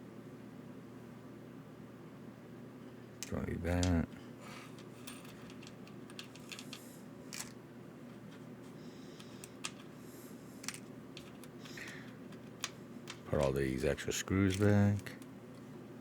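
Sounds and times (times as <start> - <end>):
faint steady hum: 0.0 - 16.0
small screws clinking: 4.7 - 7.6.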